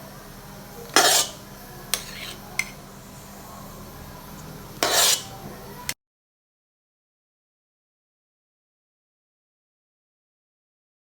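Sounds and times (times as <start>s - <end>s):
metal spoon clinking on a dish: 0.9s - 2.8s, 4.8s - 5.4s.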